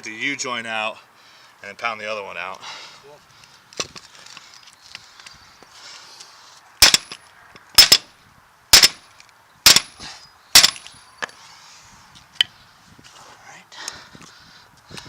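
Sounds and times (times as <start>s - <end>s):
hammer striking metal: 6.8s - 7.2s, 7.8s - 8.1s, 8.8s - 9.0s, 10.6s - 10.9s.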